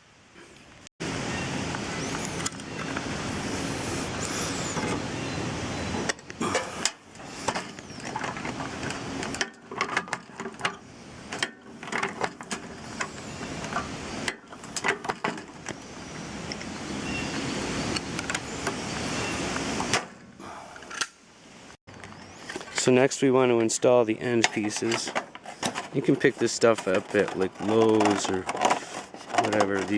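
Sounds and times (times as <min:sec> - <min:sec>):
power drill on metal: 0:02.0 - 0:05.0
metallic clicks and clanks: 0:06.1 - 0:15.8, 0:21.9 - 0:29.9.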